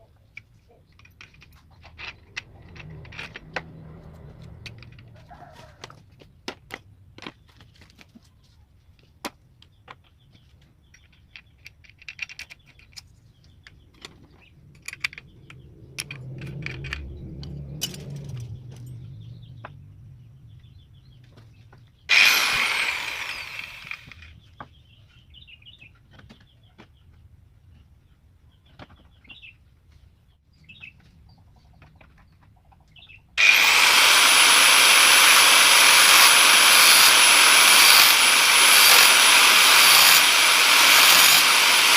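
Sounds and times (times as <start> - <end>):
angle grinder whining: 22.1 - 24.3, 33.4 - 41.9.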